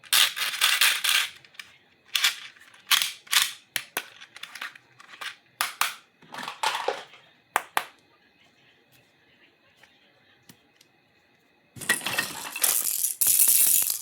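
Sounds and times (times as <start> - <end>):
plastic parts clicking: 0.0 - 7.9.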